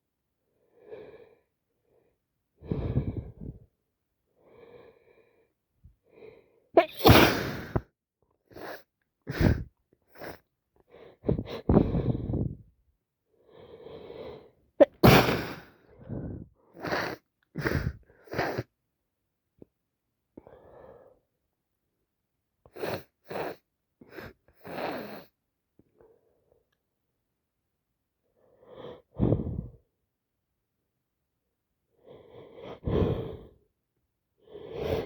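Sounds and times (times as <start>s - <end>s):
person sneezing: 6.8s - 7.8s, 14.8s - 15.7s.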